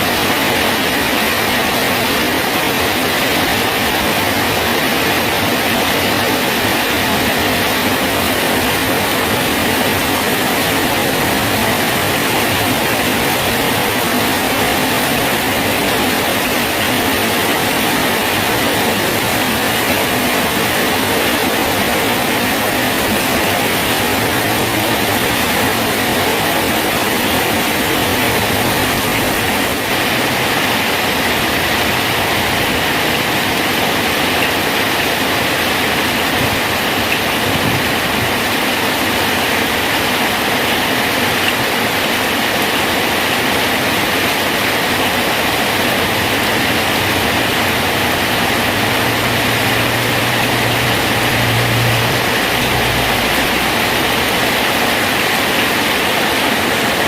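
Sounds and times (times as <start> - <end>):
rain falling on a bridge: 0.0 - 57.0.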